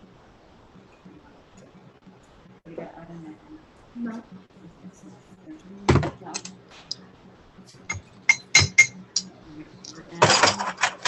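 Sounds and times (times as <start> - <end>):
metal spoon clinking against mug: 8.3 - 10.8.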